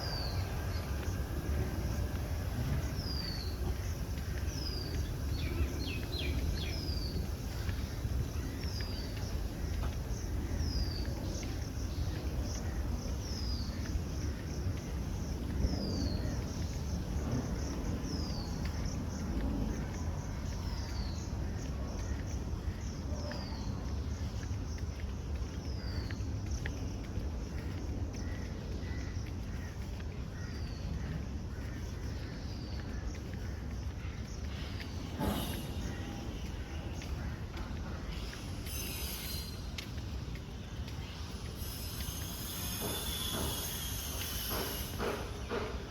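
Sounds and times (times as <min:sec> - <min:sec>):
steady low rumble: 0:00.0 - 0:38.7
birds whistling and chirping: 0:38.2 - 0:40.0.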